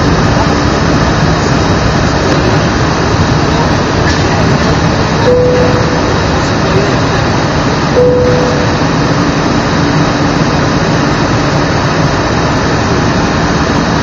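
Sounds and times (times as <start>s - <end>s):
jet engine cabin noise: 0.0s - 14.0s
brief steady tone: 5.2s - 6.6s, 7.9s - 9.4s.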